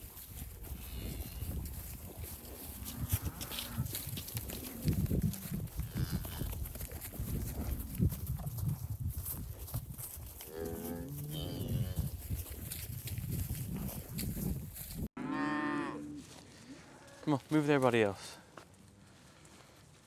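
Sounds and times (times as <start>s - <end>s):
cattle mooing: 10.5s - 12.0s, 15.2s - 17.3s.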